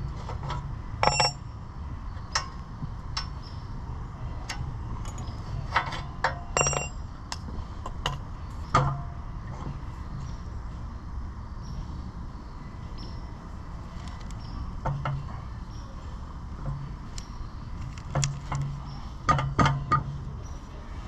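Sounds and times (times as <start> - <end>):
steady low hum: 0.0 - 21.0
metal clanks and knocks: 0.2 - 1.5, 5.0 - 7.0, 7.9 - 9.7, 18.1 - 20.2.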